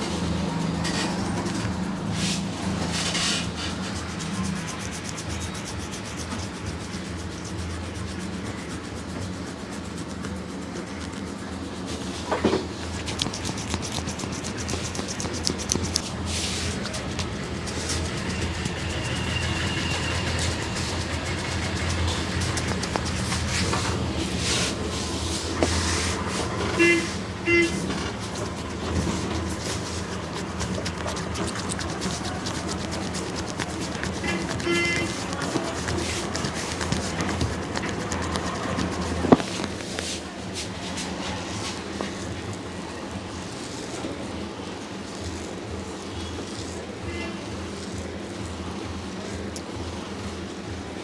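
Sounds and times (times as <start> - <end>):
hands rubbing over skin: 0.0 - 48.4
street traffic rumble: 0.0 - 51.0
vehicle horn beeps: 26.6 - 27.9, 34.6 - 35.2, 47.0 - 47.4.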